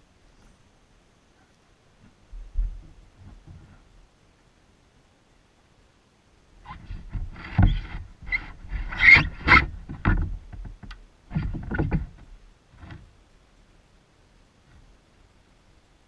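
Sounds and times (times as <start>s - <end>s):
gear knocking against kayak hull: 7.0s - 13.1s.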